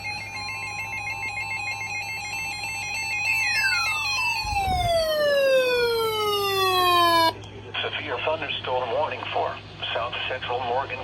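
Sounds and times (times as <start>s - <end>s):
warbling electronic beeps: 3.2s - 7.2s
electronic tone sliding down: 3.3s - 7.3s.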